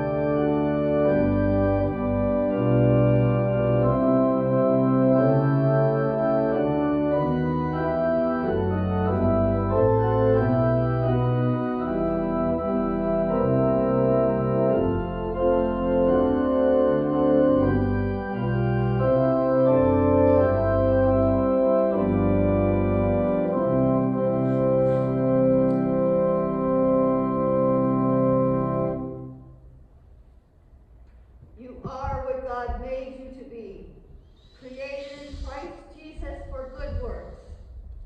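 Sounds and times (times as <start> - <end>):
church organ chords: 0.0 - 29.7.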